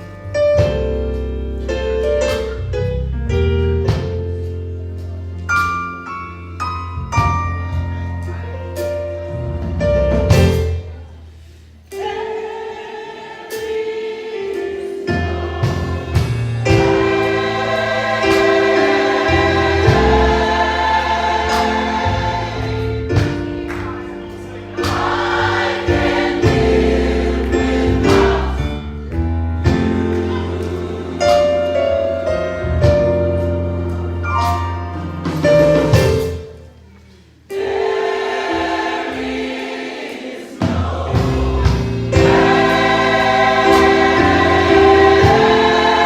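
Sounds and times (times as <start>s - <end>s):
instrumental accompaniment: 0.0s - 46.0s
choir singing in harmony: 11.8s - 34.5s, 37.5s - 46.0s.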